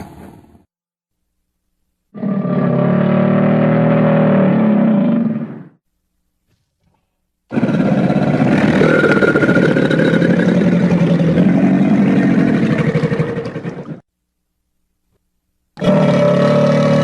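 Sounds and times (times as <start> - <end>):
crocodile bellowing: 2.2 - 5.7, 7.5 - 14.0, 15.8 - 17.0.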